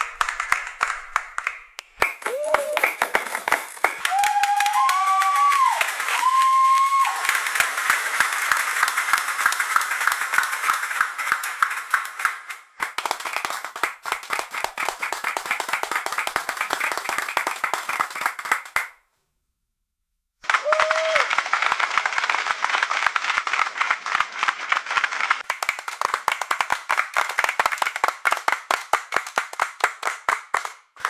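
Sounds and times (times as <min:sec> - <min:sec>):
crowd applause: 0:00.0 - 0:18.9, 0:20.4 - 0:31.0
people whooping: 0:02.0 - 0:10.4, 0:20.5 - 0:21.6.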